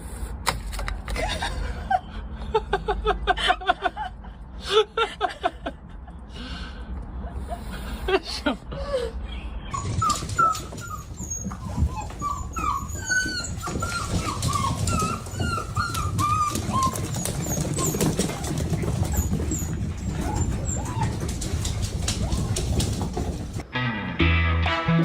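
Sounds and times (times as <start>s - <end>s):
dog whimpering: 9.8s - 23.6s.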